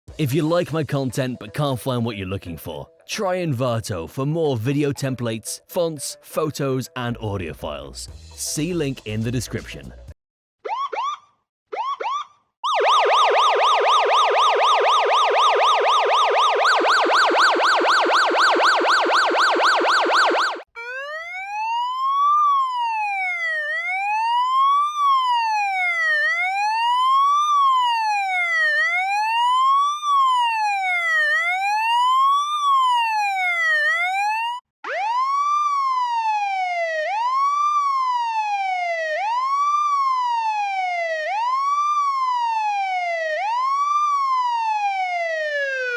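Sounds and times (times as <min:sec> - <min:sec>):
police siren: 0:10.6 - 0:45.9.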